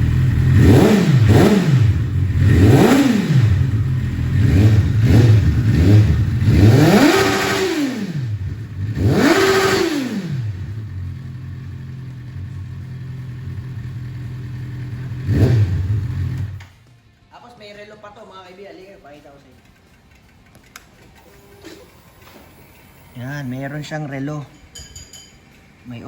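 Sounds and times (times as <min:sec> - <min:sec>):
motorcycle engine revving and idling: 0:00.0 - 0:16.7.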